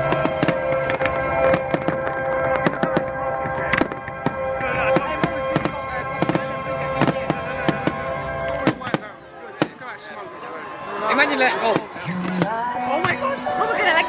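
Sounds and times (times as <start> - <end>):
fireworks bangs and crackles: 0.0 - 9.9
song playing: 0.0 - 14.0.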